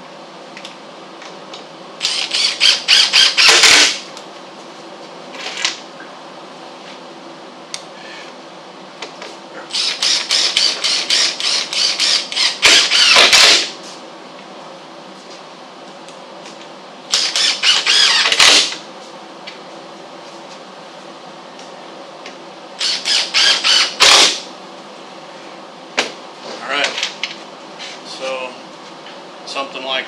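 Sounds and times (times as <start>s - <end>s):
impact driver rattling: 2.1s - 4.0s, 10.0s - 13.7s, 17.2s - 18.8s, 23.2s - 24.4s.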